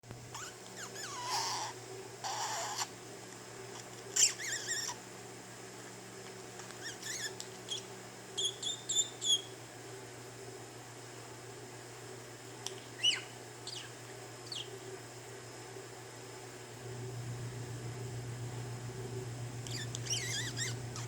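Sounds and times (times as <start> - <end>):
budgerigar squeaking and chirping: 4.2 - 5.0, 6.8 - 9.5, 13.0 - 14.7, 19.7 - 21.0.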